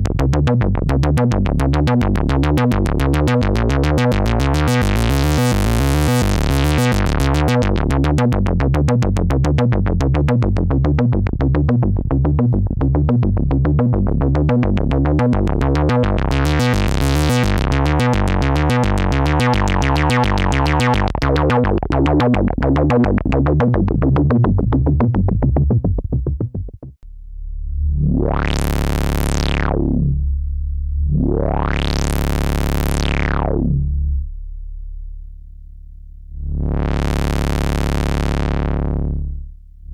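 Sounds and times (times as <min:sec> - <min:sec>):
synthesizer bass line: 0:00.0 - 0:35.6, 0:36.2 - 0:39.9
synthesizer note with filter sweep: 0:00.8 - 0:09.0, 0:13.0 - 0:23.6, 0:27.3 - 0:34.4, 0:36.3 - 0:39.4.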